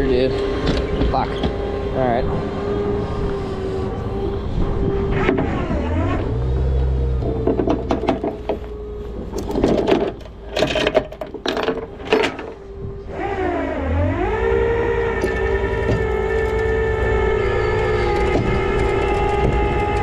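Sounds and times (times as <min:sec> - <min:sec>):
hydraulic winch whine: 0:00.0 - 0:20.0
metal clanks and scrapes: 0:07.2 - 0:12.6.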